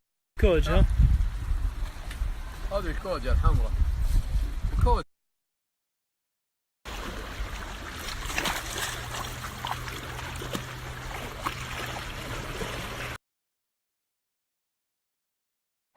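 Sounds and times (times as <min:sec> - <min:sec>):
water trickling and splashing: 0:06.9 - 0:13.2.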